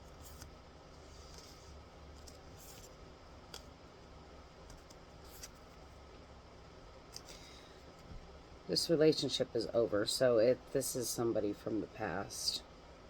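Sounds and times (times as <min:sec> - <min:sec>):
tarot cards clicking and rustling: 0:00.1 - 0:03.7, 0:04.6 - 0:05.8, 0:07.1 - 0:08.2.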